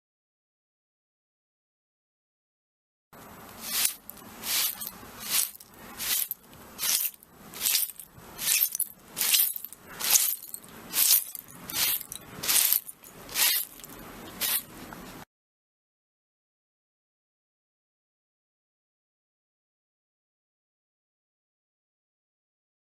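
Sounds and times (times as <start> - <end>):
broom sweeping broken glass: 3.5 - 14.8.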